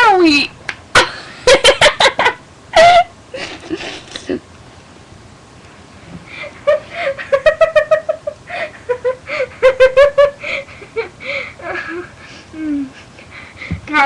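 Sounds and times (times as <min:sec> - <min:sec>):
girls giggling: 0:01.0 - 0:04.4, 0:06.4 - 0:13.3.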